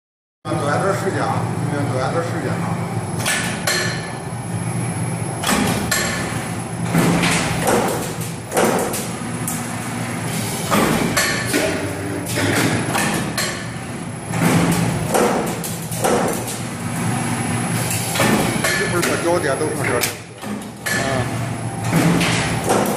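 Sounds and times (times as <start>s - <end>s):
low machine hum: 0.5s - 22.9s
machine shearing clunks: 3.2s - 4.2s, 5.4s - 9.6s, 10.4s - 16.7s, 17.8s - 22.9s.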